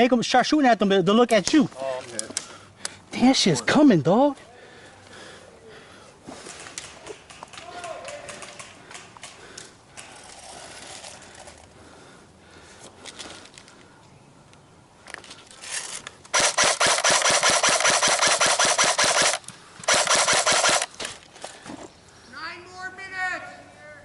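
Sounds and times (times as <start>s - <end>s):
airsoft gun firing bursts: 16.3s - 21.0s.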